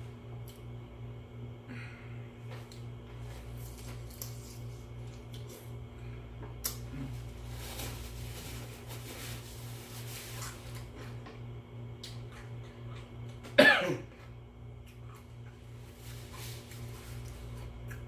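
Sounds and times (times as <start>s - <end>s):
steady low hum: 0.0s - 18.0s
person coughing: 13.5s - 14.2s.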